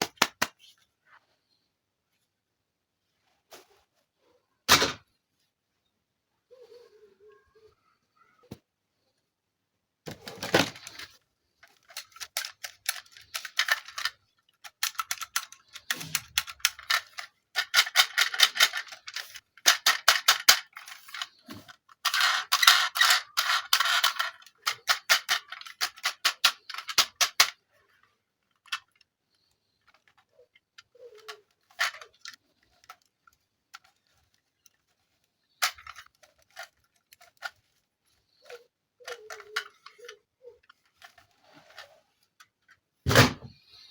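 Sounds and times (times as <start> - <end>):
plastic crackling clicks: 10.3 - 27.6.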